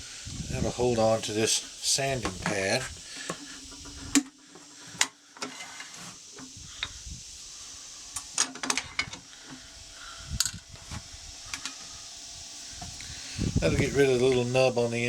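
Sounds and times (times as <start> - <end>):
faint steady hum: 0.0 - 15.0.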